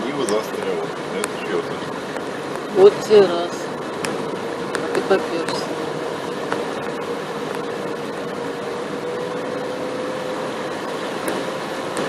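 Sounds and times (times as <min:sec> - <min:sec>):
vehicle hiss and hum: 0:00.0 - 0:12.0.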